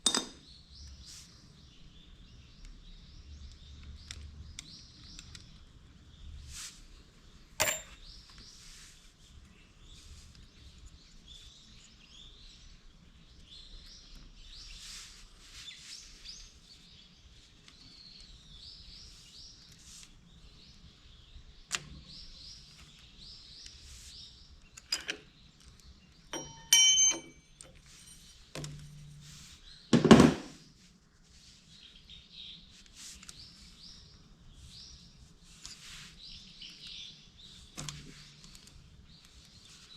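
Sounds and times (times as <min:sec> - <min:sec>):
small birds chirping: 0:00.4 - 0:29.9, 0:30.5 - 0:39.9
metal tools clinking: 0:07.6 - 0:08.0, 0:26.4 - 0:28.4
metallic clatter: 0:07.6 - 0:08.0, 0:26.4 - 0:28.9
heavy thunk: 0:30.0 - 0:30.5.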